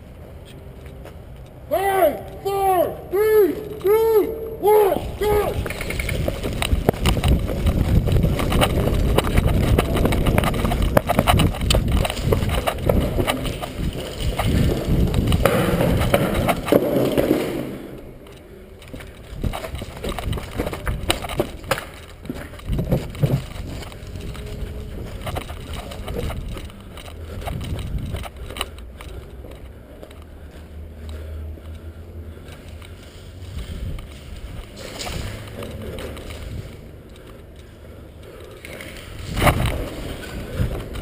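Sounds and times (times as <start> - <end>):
footsteps and gear knocking: 5.0 - 41.0
camera handling rumble and rustling: 5.1 - 41.0
scattered clicks and knocks: 5.4 - 30.3, 33.6 - 41.0.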